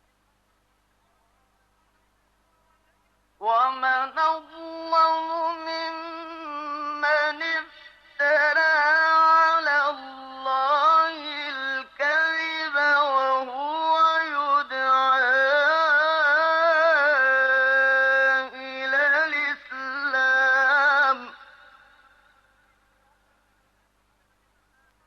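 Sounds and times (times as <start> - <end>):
man chanting recitation: 3.4 - 22.3.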